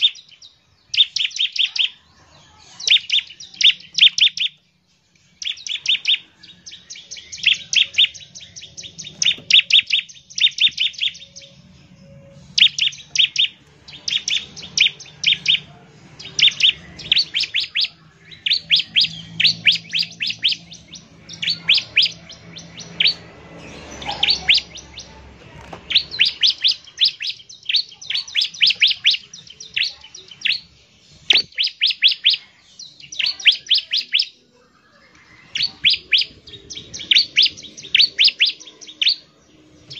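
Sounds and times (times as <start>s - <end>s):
bird singing sharp high chips: 0.0s - 2.0s, 2.7s - 4.6s, 5.2s - 34.4s, 35.2s - 39.9s.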